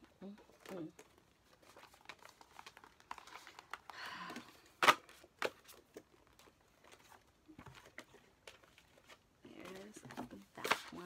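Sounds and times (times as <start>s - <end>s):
crinkling rustle: 0.0s - 11.0s.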